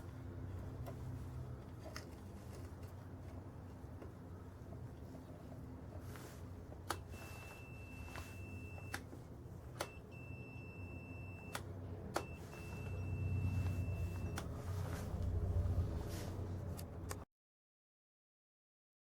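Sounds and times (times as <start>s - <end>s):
test probes clicking: 6.8s - 7.2s, 9.7s - 10.2s, 11.4s - 13.0s
multimeter continuity beeps: 6.9s - 9.0s, 9.7s - 14.5s.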